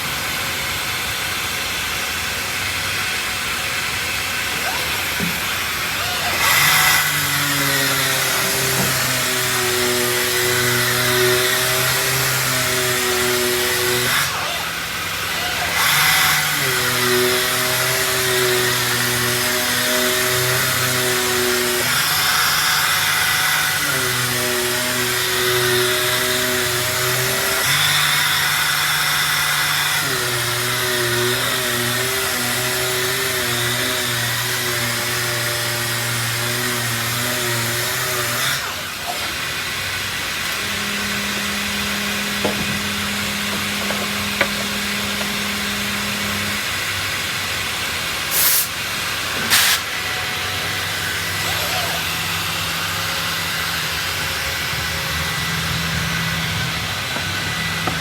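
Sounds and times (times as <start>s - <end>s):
sanding machine hiss: 2.9s - 54.2s
motor whines shifting pitch: 38.5s - 47.9s, 49.9s - 58.0s.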